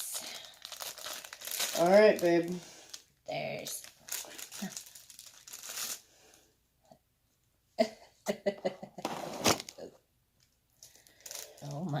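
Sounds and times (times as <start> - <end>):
plastic packaging crinkling: 0.0 - 6.0, 9.1 - 9.9, 10.8 - 12.0.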